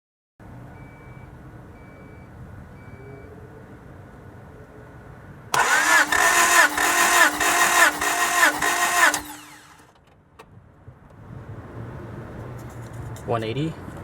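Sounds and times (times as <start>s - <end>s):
engine cranking by starter motor: 5.5s - 10.1s
starter motor whine winding down: 5.6s - 10.0s.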